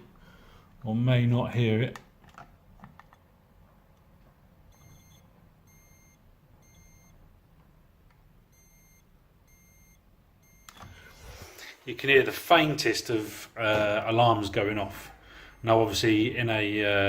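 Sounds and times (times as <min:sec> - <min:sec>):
faint smoke detector beeps: 0:04.7 - 0:07.2, 0:08.5 - 0:11.2, 0:15.3 - 0:16.5.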